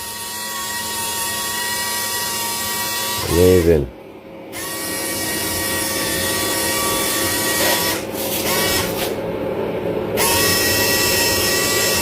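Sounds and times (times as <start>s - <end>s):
electric motor and gearing whine: 0.0s - 12.0s.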